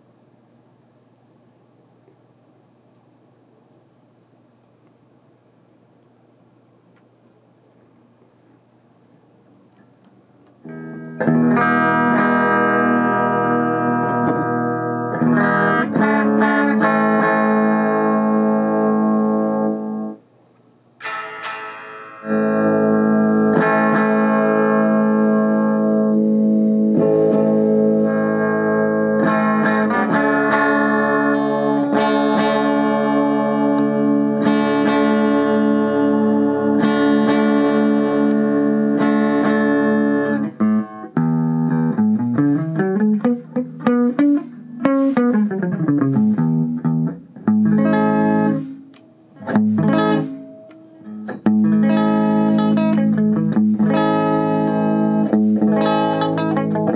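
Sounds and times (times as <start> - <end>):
electric guitar playing: 10.6 - 20.2, 21.0 - 56.9.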